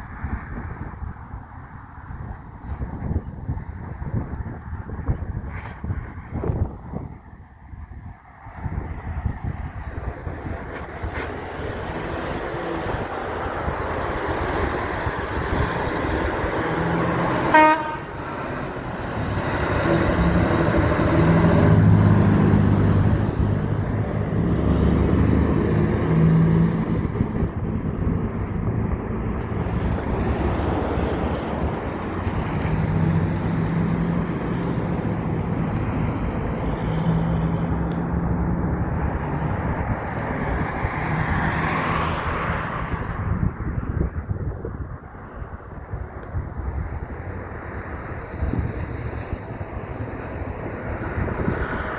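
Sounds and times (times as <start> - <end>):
heavy trucks passing: 0.0 - 51.9
horn toot: 17.0 - 18.6.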